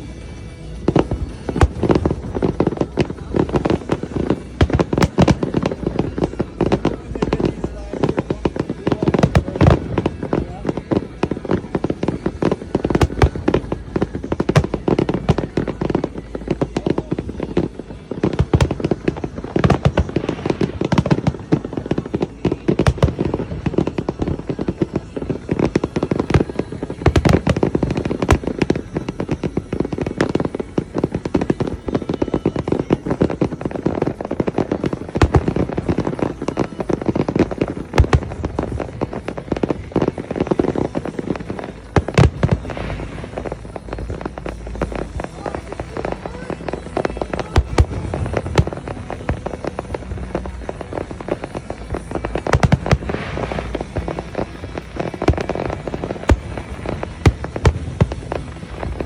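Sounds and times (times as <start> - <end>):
fireworks bangs and crackling: 0.0 - 59.0
loud firework booms: 47.2 - 59.0.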